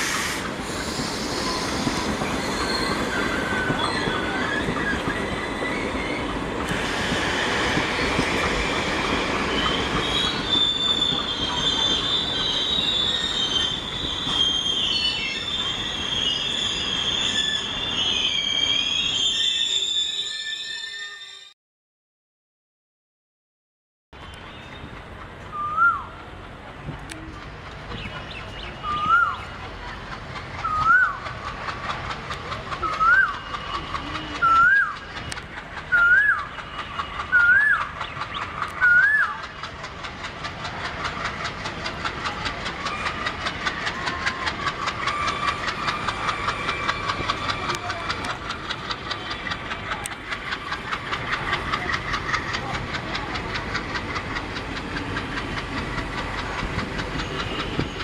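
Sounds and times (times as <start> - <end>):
diesel locomotive engine: 0.0 - 21.5, 24.2 - 58.0
whistled calls gliding up: 0.0 - 21.5, 25.5 - 26.3, 27.9 - 29.7, 30.5 - 31.7, 32.8 - 39.7.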